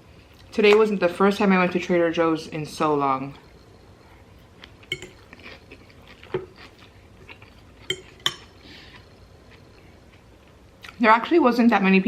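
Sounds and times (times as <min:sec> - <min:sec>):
cutlery clinking against dish: 0:04.8 - 0:05.3, 0:07.8 - 0:08.5.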